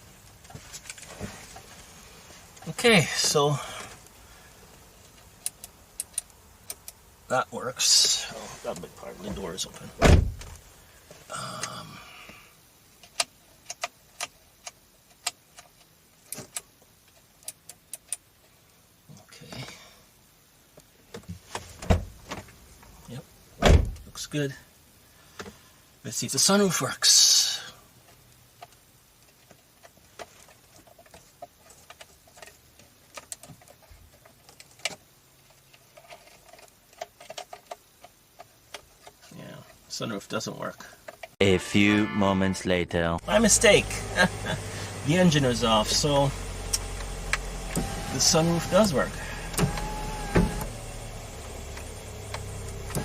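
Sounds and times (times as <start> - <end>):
brief tone: 41.4 - 42.9.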